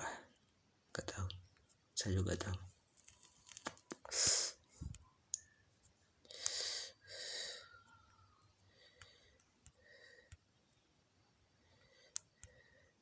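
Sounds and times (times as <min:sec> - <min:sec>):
person breathing: 0:06.2 - 0:10.5, 0:11.5 - 0:13.0.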